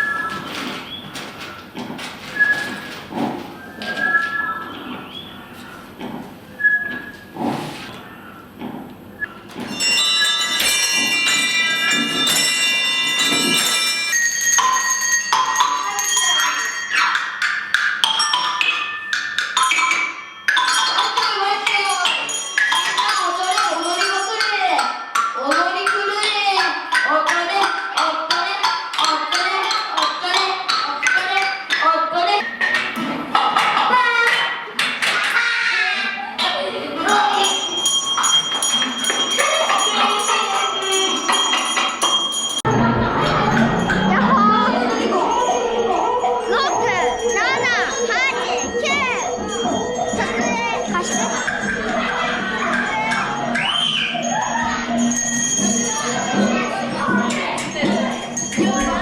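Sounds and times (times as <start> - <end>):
voices: 0.0 - 59.0
bell-like struck percussion: 9.6 - 25.4, 37.1 - 59.0
steady high tone: 37.1 - 59.0.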